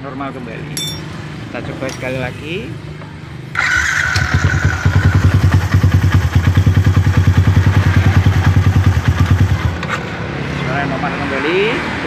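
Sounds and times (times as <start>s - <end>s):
motorcycle engine idling: 2.9s - 9.9s.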